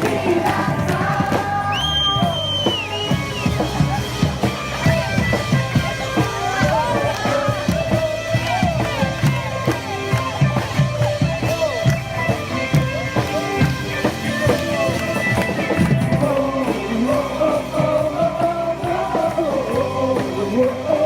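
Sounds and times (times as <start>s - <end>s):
voices singing over a beat: 0.0s - 4.0s, 14.2s - 21.0s.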